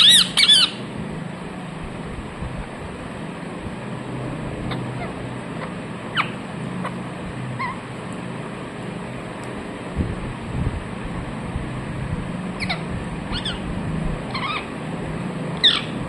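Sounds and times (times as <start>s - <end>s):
parrot chirping: 0.0s - 0.8s, 4.7s - 7.0s, 7.6s - 7.9s, 12.6s - 13.7s, 14.3s - 14.7s, 15.6s - 16.0s
steady background hum: 0.0s - 16.0s.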